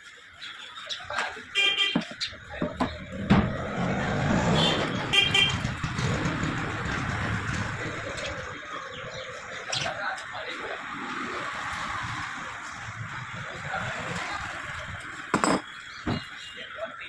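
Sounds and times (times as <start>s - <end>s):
vehicle horn toots: 1.6s - 2.1s, 4.5s - 5.8s.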